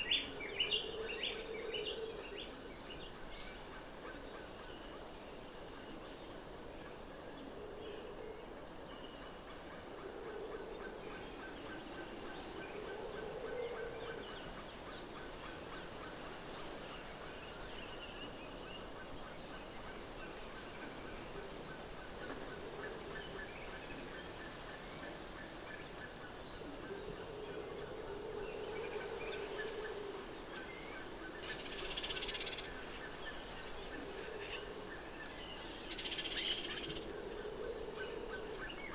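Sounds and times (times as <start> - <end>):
high insect drone: 11.7 - 38.9.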